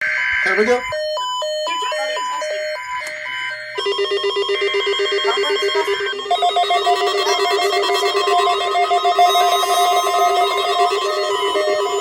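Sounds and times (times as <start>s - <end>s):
trilling electronic alert tone: 0.0s - 12.0s
higher alert tone: 1.5s - 12.0s
warbling data burst: 1.7s - 12.0s.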